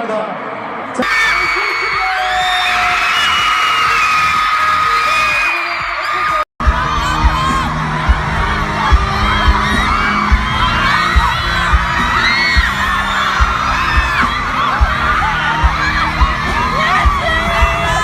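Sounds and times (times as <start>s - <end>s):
crowd screaming and cheering: 0.0s - 18.0s
deep thumping beat: 6.6s - 18.0s.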